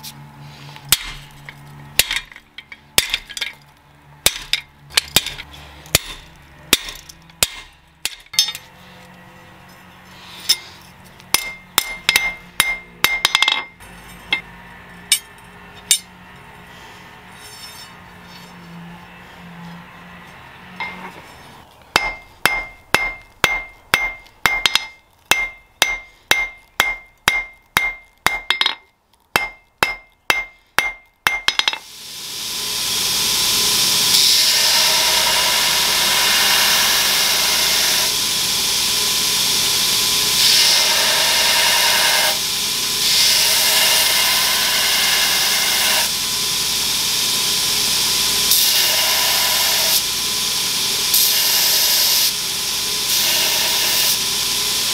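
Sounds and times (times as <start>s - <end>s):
hammer striking steel on anvil: 0.9s - 3.6s, 4.2s - 8.7s, 11.3s - 14.5s, 15.1s - 16.1s, 20.8s - 21.2s, 21.9s - 31.9s.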